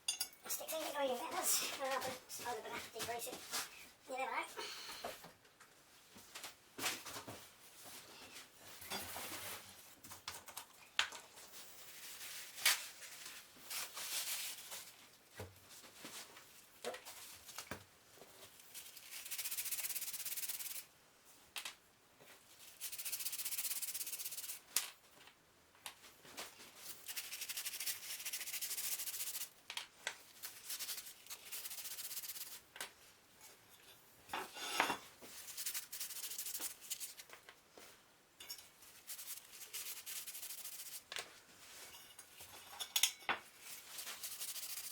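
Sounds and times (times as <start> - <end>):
hand rubbing dry hiss: 18.7 - 20.8, 22.7 - 24.6, 26.9 - 29.5, 30.4 - 32.6, 35.4 - 37.2, 39.0 - 41.1, 44.2 - 44.9.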